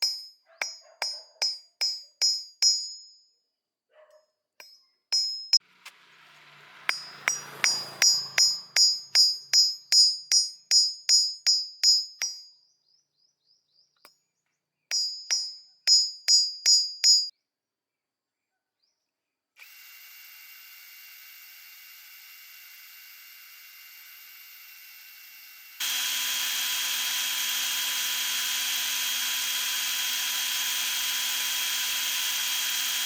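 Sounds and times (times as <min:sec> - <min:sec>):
hammer tapping on metal: 0:00.0 - 0:03.0, 0:04.6 - 0:05.6, 0:06.9 - 0:12.4, 0:14.9 - 0:17.3
steady whir: 0:05.6 - 0:10.4, 0:19.6 - 0:33.0.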